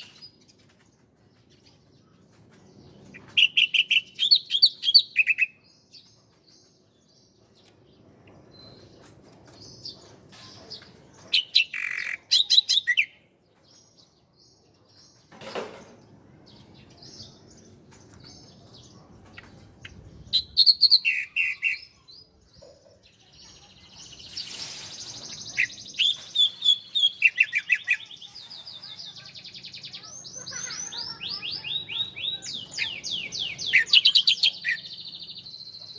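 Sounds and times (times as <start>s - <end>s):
bird fast high chirping: 19.9s - 22.0s, 24.0s - 35.9s.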